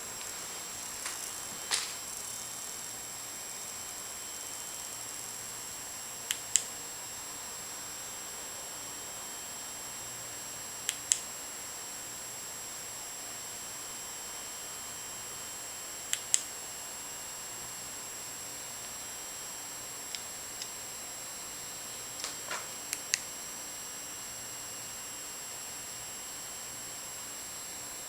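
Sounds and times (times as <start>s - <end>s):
steady hiss: 0.0s - 2.9s.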